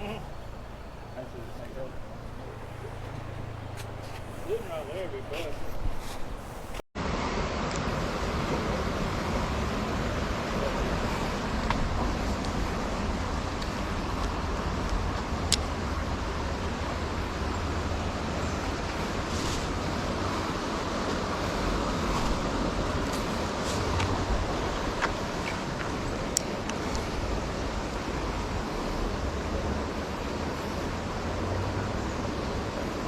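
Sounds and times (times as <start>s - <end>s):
stream water rushing: 6.6s - 33.0s.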